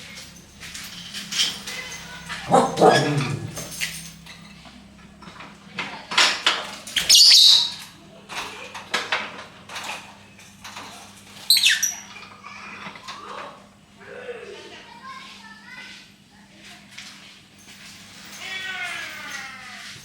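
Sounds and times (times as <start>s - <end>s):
birds chirping and squawking: 2.3s - 3.8s, 7.0s - 7.9s, 11.4s - 12.1s.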